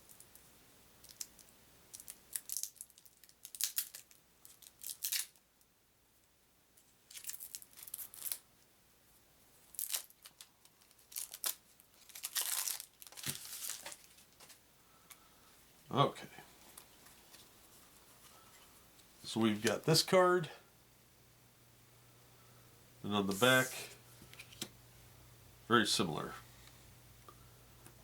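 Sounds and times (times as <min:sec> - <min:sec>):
wrapping tearing and crinkling: 0:01.0 - 0:05.4, 0:07.0 - 0:08.5, 0:09.7 - 0:14.6.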